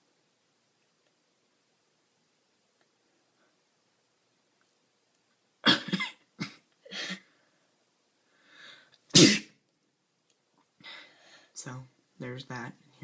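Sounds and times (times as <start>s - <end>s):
person coughing: 5.6s - 7.3s, 9.2s - 9.5s.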